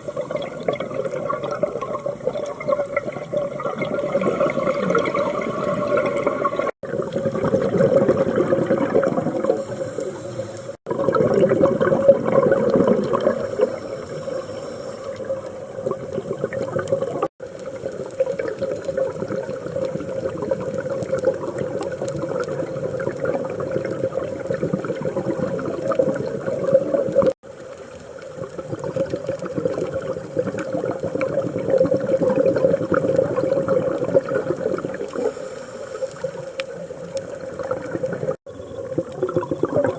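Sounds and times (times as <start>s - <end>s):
exhaled bubbles gurgling: 0.0s - 39.9s
regulator breathing air rush: 13.4s - 15.2s, 35.2s - 36.1s.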